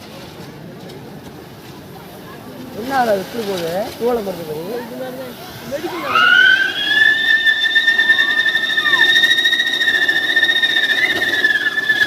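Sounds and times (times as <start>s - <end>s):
whistling firework: 2.8s - 12.0s.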